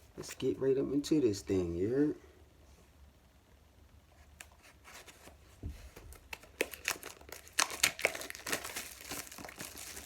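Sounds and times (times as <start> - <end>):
packaging crinkling and tearing: 6.1 - 10.0.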